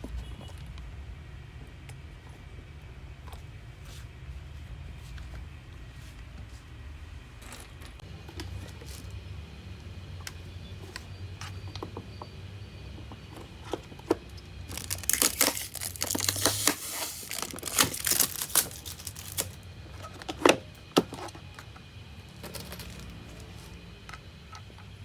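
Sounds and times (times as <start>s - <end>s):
packaging torn and crumpled: 14.7s - 19.6s.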